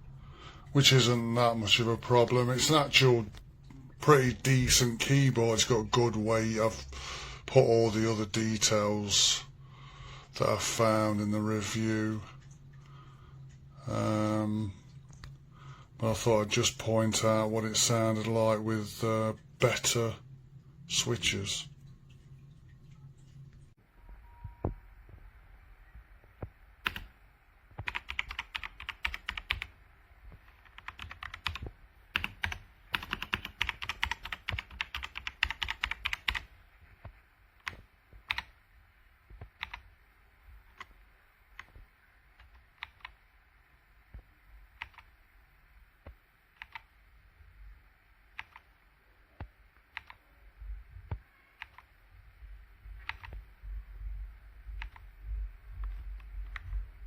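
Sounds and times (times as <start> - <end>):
mechanical keyboard typing: 26.8 - 27.1, 27.8 - 29.8, 30.4 - 36.5, 37.6 - 38.5, 39.4 - 39.9, 44.7 - 45.1, 46.6 - 46.9, 48.3 - 48.6, 49.9 - 50.2, 51.6 - 51.9, 53.0 - 53.4.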